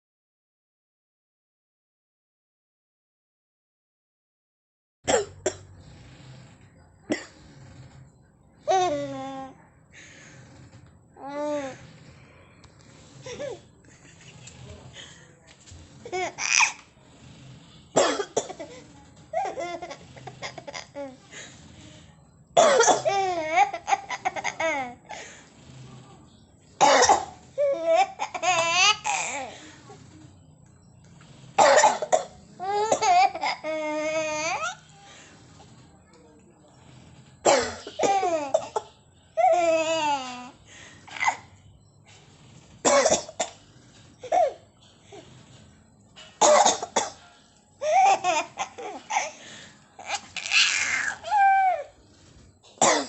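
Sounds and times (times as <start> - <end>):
person coughing: 5.1 - 5.6, 18.0 - 18.7, 52.8 - 53.0.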